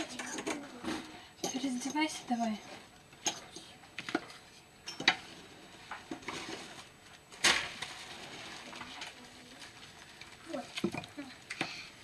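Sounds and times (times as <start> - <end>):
dishes and utensils clattering: 0.0 - 6.8.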